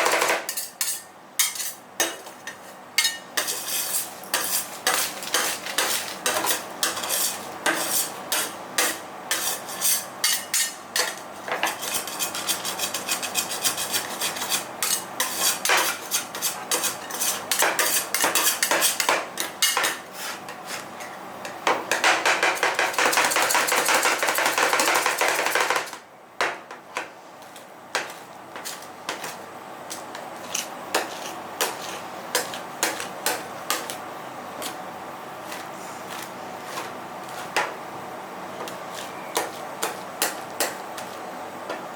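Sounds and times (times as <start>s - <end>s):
metal spatulas clacking on steel plate: 0.0s - 3.6s
spatulas scraping across steel plate: 0.5s - 21.1s.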